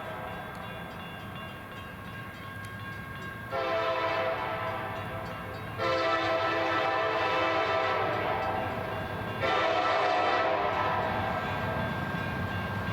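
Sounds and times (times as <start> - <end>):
locomotive air horn blasts: 3.5 - 5.0, 5.8 - 11.3.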